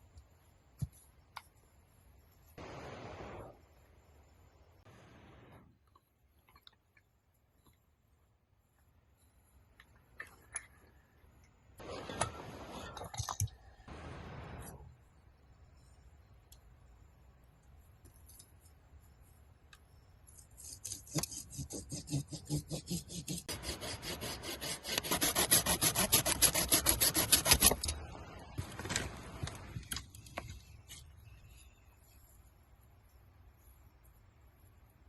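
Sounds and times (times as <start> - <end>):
rapid scraping strokes: 20.6 - 28.0.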